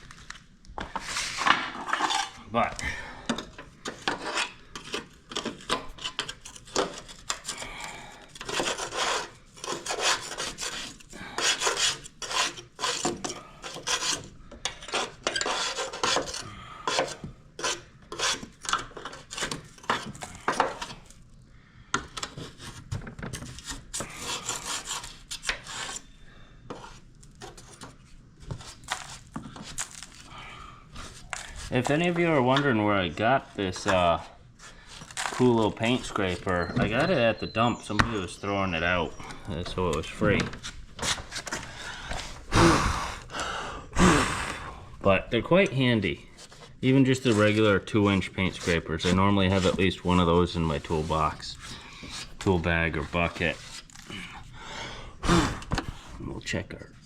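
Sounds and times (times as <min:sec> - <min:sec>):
metal scraper scraping dirt: 0:00.9 - 0:02.7, 0:03.8 - 0:07.6, 0:08.4 - 0:21.1, 0:22.2 - 0:27.8, 0:31.0 - 0:42.4, 0:45.4 - 0:53.9.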